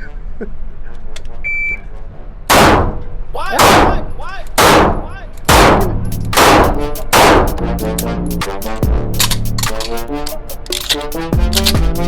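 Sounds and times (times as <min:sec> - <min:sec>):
pistol shots with echo: 0:02.5 - 0:07.6.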